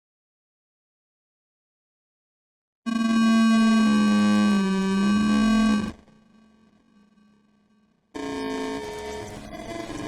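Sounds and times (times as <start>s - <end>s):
distorted musical tone: 2.9s - 7.5s.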